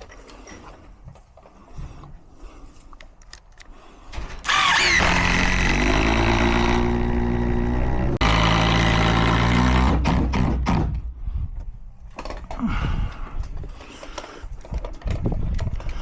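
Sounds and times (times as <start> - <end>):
power tool whining: 4.4 - 10.5.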